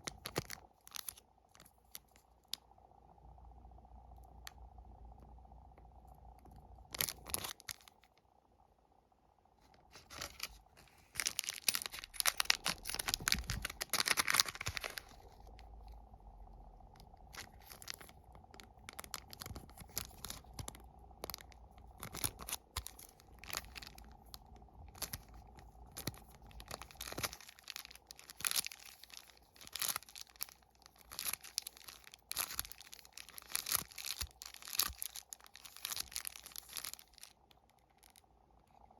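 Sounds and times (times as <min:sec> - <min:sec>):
plastic wrappers crinkling: 0:00.0 - 0:02.5, 0:06.8 - 0:08.0, 0:09.8 - 0:15.8, 0:17.0 - 0:38.2.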